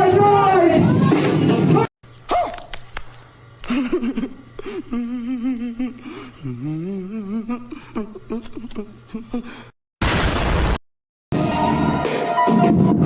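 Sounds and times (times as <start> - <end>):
person humming: 4.2 - 9.6.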